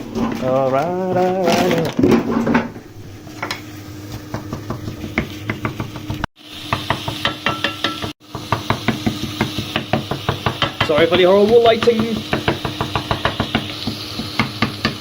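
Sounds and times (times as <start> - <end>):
kitchen utensil tapping: 4.3 - 15.0.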